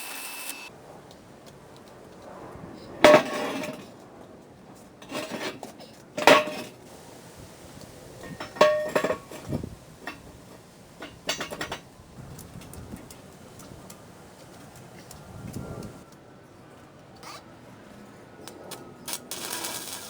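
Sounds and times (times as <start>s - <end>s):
steel pieces clanking: 6.2s - 11.9s.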